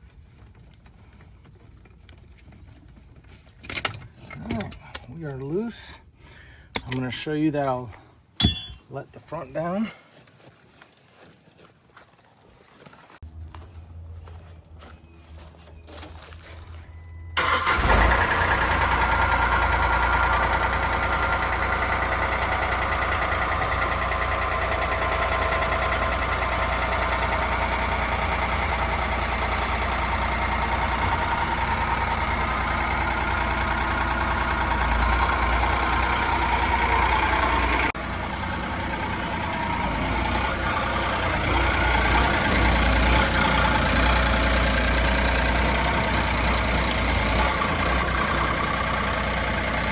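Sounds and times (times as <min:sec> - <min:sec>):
stump grinder engine running: 0:17.4 - 0:49.9.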